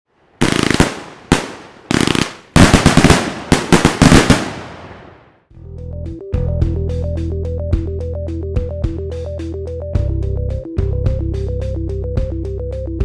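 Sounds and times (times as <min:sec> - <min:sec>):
fireworks bangs: 0:00.4 - 0:05.4
background music: 0:05.5 - 0:13.0.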